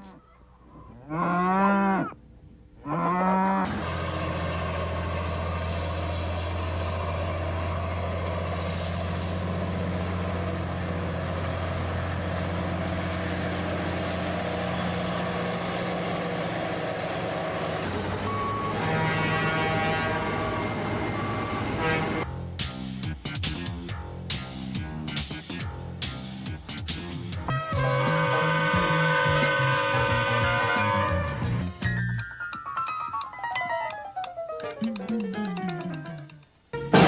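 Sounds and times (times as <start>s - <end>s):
cow mooing: 0.9s - 2.2s, 2.8s - 3.8s, 27.8s - 31.4s
vehicle engine running: 3.7s - 31.9s.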